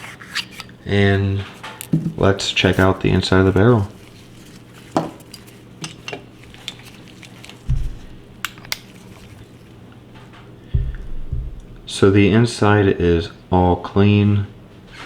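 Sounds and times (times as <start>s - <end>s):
dull low thump: 7.7s - 8.3s, 10.8s - 12.0s.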